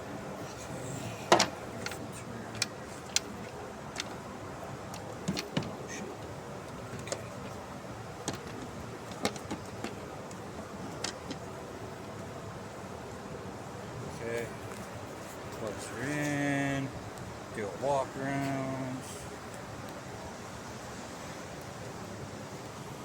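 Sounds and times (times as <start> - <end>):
steady background hum: 0.0 - 23.0
tools and engine parts clicking: 8.2 - 10.0.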